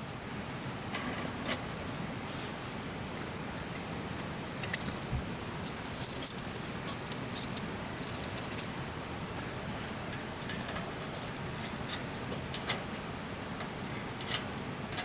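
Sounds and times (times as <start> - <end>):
small metal objects jingling: 4.6 - 9.5.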